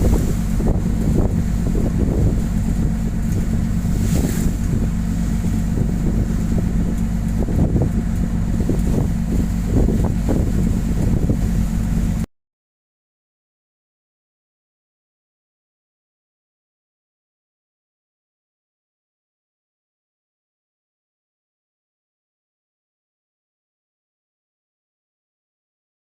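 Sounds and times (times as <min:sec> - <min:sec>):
wind gusts buffeting microphone: 0:00.0 - 0:12.2
boat engine running: 0:00.0 - 0:12.3.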